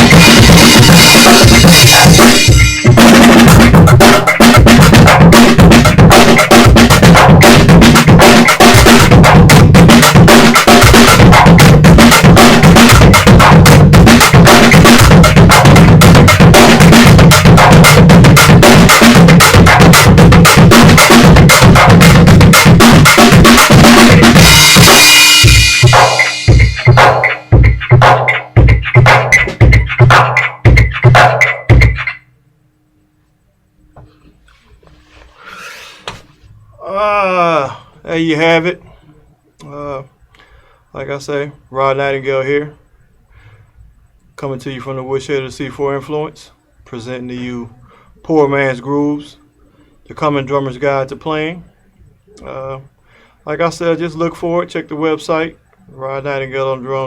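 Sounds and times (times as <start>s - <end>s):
cymbal crash ringing: 0.0s - 4.7s, 20.5s - 27.7s
drum kit groove: 0.0s - 32.3s
backing track: 0.0s - 32.5s.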